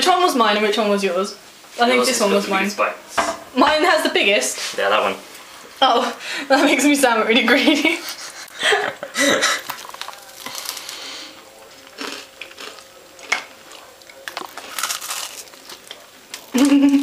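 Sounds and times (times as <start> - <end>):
crunchy biscuit eating: 9.4 - 17.0.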